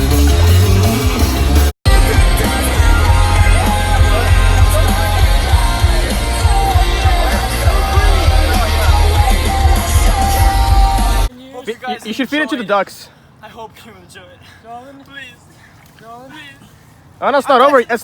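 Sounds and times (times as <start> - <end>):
rock song with singing: 0.0 - 11.3.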